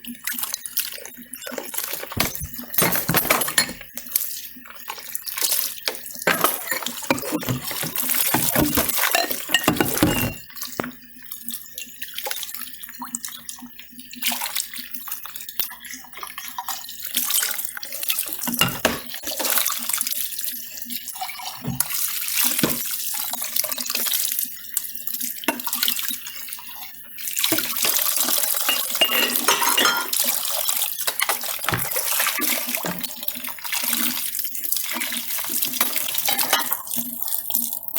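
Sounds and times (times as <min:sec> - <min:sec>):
tap water running: 0:00.8 - 0:11.1, 0:16.2 - 0:37.9
dishes knocking: 0:01.6 - 0:03.9, 0:06.3 - 0:11.0, 0:18.4 - 0:19.2, 0:21.6 - 0:21.9, 0:28.7 - 0:30.2, 0:31.1 - 0:32.0.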